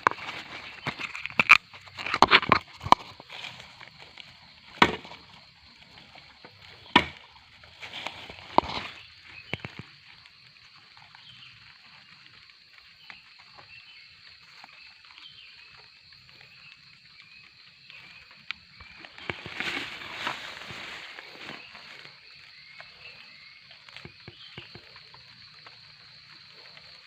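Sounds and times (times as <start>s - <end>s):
frogs croaking: 0.0s - 27.0s
blade chopping bamboo: 4.7s - 5.4s, 6.9s - 7.3s.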